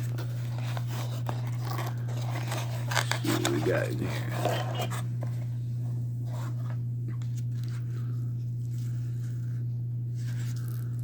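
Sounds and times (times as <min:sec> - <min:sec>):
packaging rustling and scraping: 0:00.0 - 0:05.6, 0:06.2 - 0:09.4
low electrical hum: 0:00.0 - 0:11.0.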